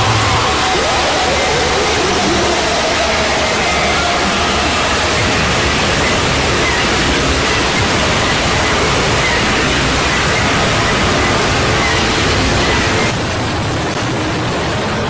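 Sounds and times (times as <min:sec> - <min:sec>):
faint high whine: 0:00.0 - 0:15.0
harsh static-like noise: 0:00.0 - 0:15.0.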